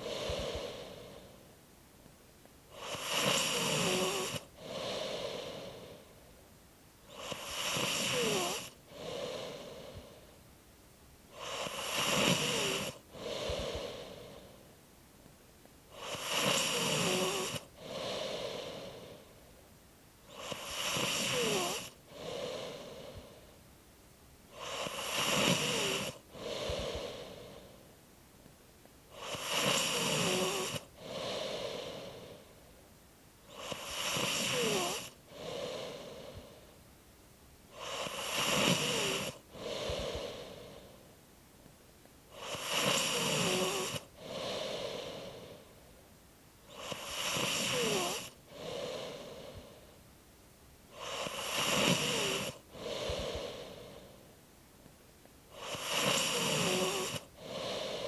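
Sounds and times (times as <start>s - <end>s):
person snoring: 0.0s - 1.4s, 2.7s - 6.2s, 7.0s - 10.3s, 11.3s - 14.7s, 15.9s - 19.4s, 20.2s - 23.5s, 24.5s - 27.8s, 29.1s - 32.6s, 33.4s - 36.7s, 37.7s - 41.1s, 42.3s - 45.8s, 46.6s - 50.0s, 50.9s - 54.3s, 55.5s - 58.0s.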